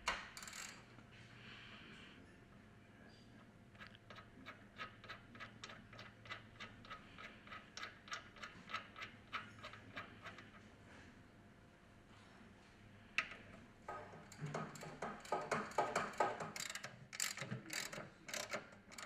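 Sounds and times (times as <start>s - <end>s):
ratchet wrench clicking: 0.4s - 0.8s, 4.1s - 10.3s, 14.8s - 19.0s.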